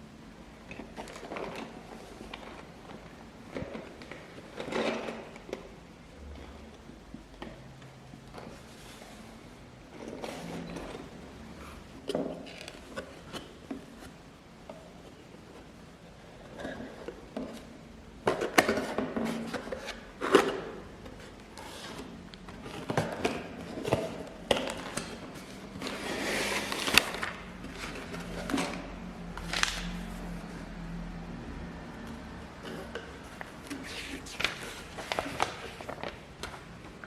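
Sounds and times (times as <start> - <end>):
packaging rustling: 33.7 - 36.6.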